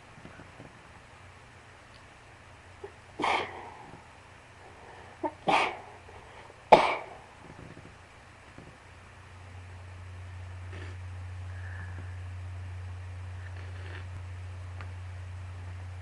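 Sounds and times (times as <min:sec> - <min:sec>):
person sneezing: 0:02.8 - 0:03.8, 0:05.2 - 0:06.0, 0:06.7 - 0:07.2.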